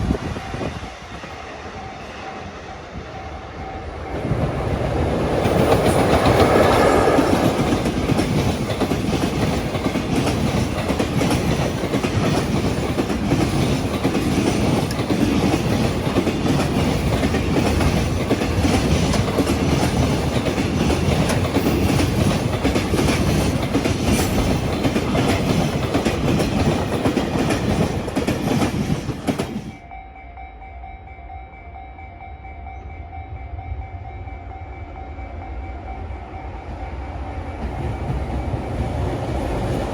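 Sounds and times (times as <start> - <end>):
freight train passing: 0.0 - 39.9
level-crossing warning bell: 0.1 - 39.5
wagons clickety-clack over rail joints: 4.0 - 29.8.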